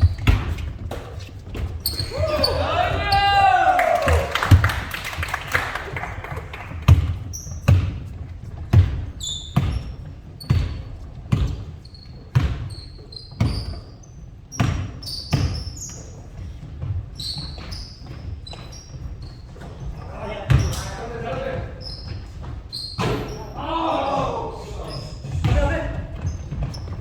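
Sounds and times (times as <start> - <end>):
basketballs thudding on gym floor: 0.0 - 27.0
short high squeaks: 1.8 - 3.2, 9.2 - 10.9, 11.8 - 14.2, 21.8 - 23.6.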